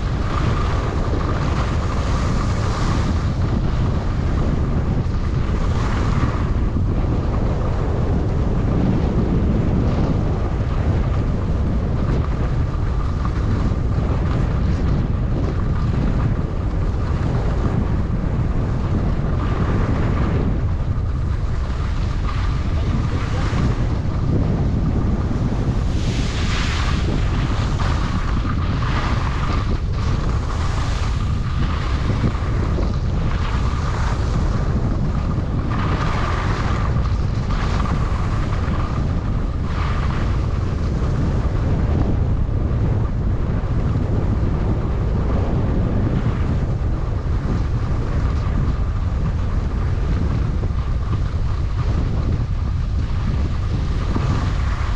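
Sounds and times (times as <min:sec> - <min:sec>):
wind buffeting microphone: 0:00.0 - 0:54.9
skis hissing over snow: 0:25.1 - 0:32.6.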